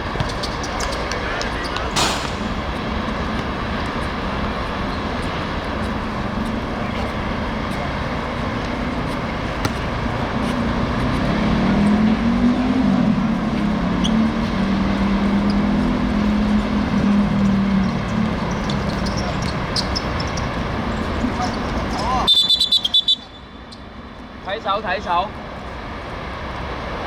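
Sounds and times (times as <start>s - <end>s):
outdoor traffic noise: 0.0s - 27.0s
low engine hum: 1.1s - 22.0s
sharp click: 2.0s - 2.7s.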